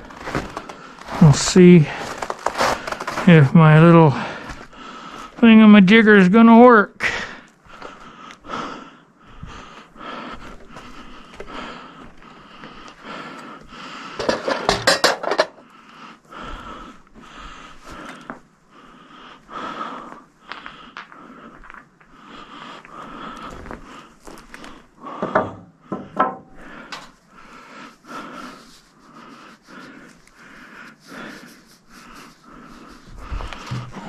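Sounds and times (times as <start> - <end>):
metal clinks and knocks: 14.2 - 15.6
man wheezy breathing: 15.6 - 34.0.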